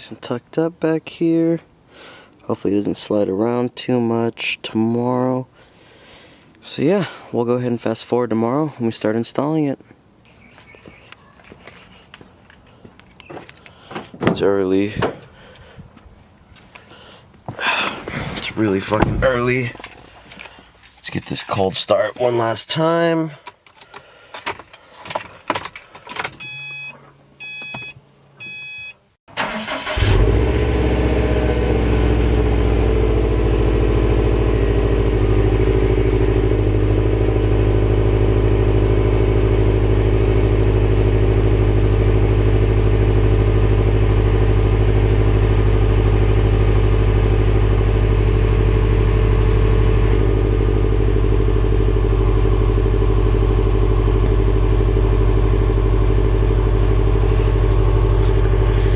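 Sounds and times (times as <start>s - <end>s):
car engine starting and idling: 17.5s - 20.7s, 25.6s - 58.9s
electronic beeps: 26.4s - 29.0s.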